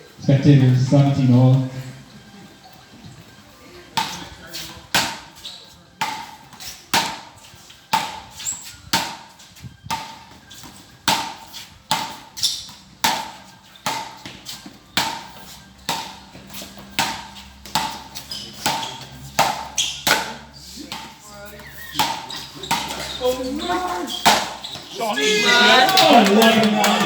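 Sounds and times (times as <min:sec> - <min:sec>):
wooden paddles striking ball: 0:19.4 - 0:21.1, 0:24.2 - 0:24.6.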